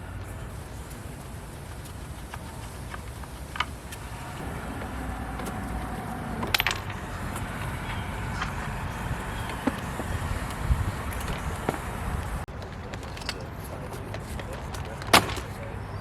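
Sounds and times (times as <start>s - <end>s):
low rumble: 3.8s - 12.5s.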